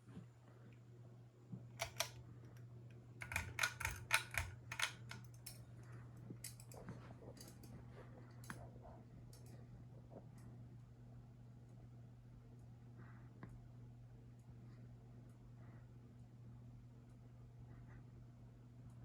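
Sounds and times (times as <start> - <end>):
ceiling fan humming: 0.0 - 19.0
sharp irregular clicks: 1.8 - 2.2, 3.2 - 5.6.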